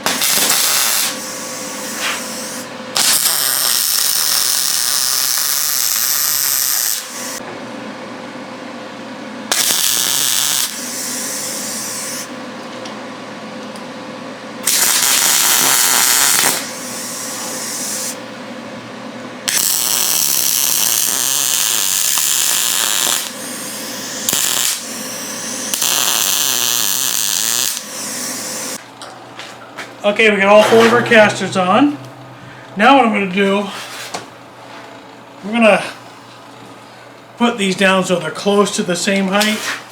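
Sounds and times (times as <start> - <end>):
welder sizzling and crackling: 0.0 - 7.4, 9.5 - 12.3, 14.6 - 18.2, 19.5 - 28.8
welder humming: 0.0 - 7.6, 9.5 - 29.1.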